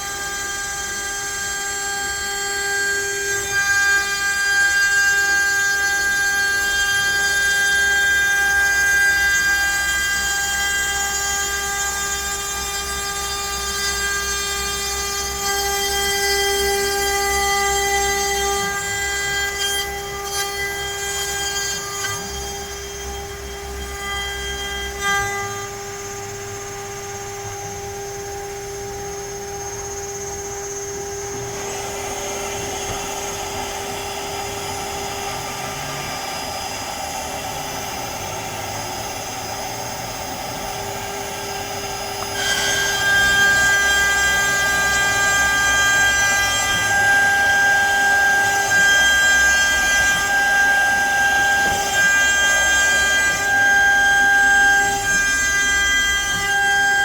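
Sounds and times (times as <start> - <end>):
router bit cutting wood: 0.0 - 57.0
router spindle whine: 0.0 - 57.0.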